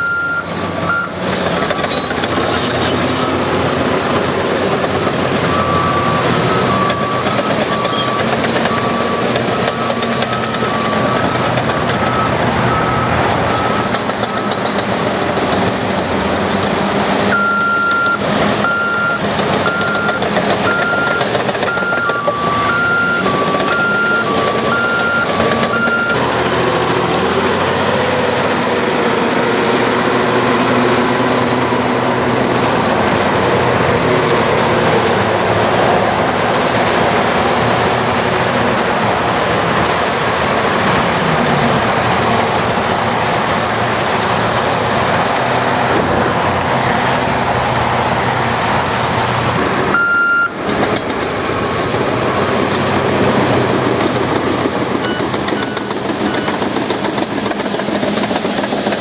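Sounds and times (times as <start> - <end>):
backup alarm beeping: 0.0 - 1.2, 5.4 - 14.6, 17.3 - 26.9, 49.9 - 50.6, 55.0 - 56.6
diesel engines running: 0.0 - 59.0
lower-pitched backup alarm: 17.3 - 27.1, 49.9 - 50.6.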